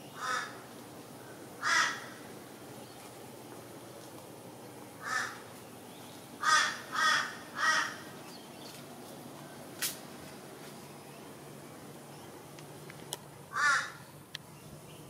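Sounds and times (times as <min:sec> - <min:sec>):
crow cawing: 0:00.2 - 0:00.6, 0:01.6 - 0:02.3, 0:05.0 - 0:05.5, 0:06.4 - 0:08.2, 0:13.5 - 0:14.1.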